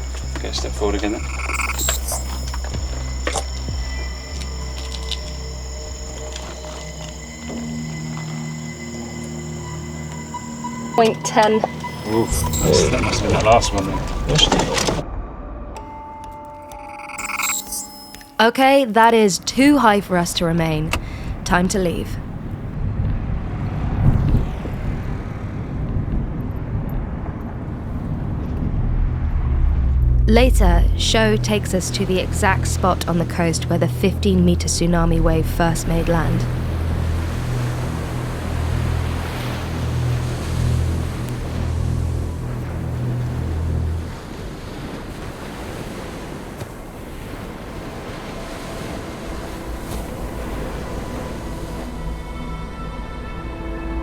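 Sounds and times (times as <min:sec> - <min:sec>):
car engine and road rumble: 0:00.0 - 0:15.0, 0:20.9 - 0:44.7
sea waves washing onto shore: 0:36.4 - 0:52.3.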